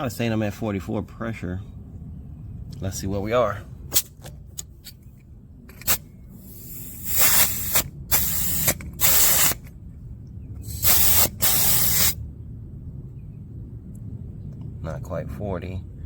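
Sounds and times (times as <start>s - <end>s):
air hissing from tyre valve: 5.8s - 9.7s, 10.6s - 12.2s.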